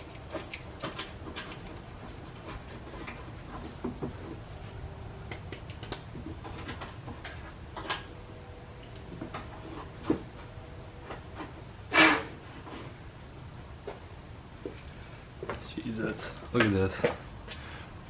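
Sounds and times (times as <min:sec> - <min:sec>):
hand tools clicking and tapping: 0:05.3 - 0:08.0.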